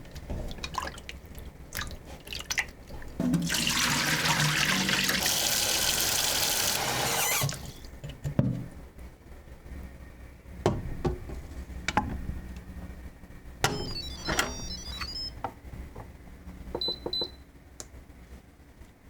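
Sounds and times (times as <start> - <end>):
water running from a tap: 3.3 - 7.0.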